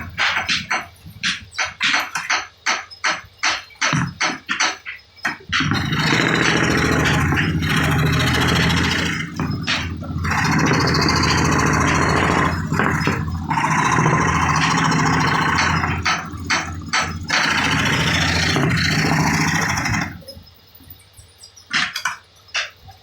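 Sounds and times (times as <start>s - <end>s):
power tool cutting wood: 5.6s - 20.2s.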